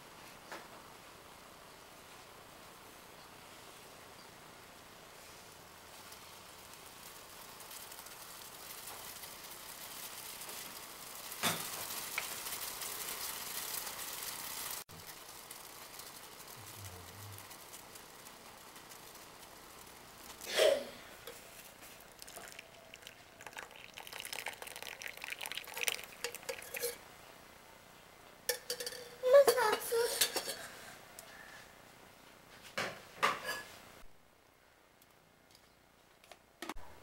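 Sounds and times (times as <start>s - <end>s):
water boiling with a hiss: 0.9s - 31.8s
spoon and crockery clinking: 23.5s - 27.0s, 28.5s - 30.6s.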